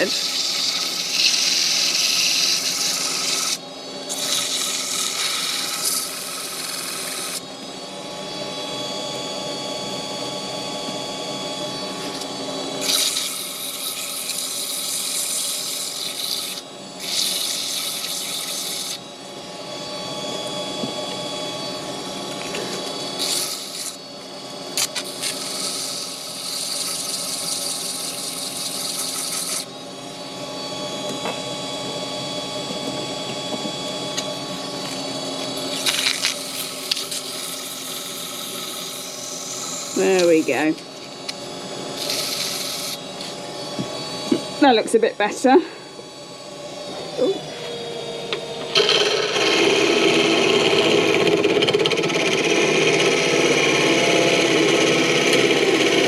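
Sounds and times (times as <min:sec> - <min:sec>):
tool scraping spinning wood: 0:00.0 - 0:07.5, 0:11.9 - 0:19.0, 0:22.2 - 0:29.8, 0:31.0 - 0:45.5, 0:48.6 - 0:56.0
wood lathe humming: 0:00.0 - 0:56.0.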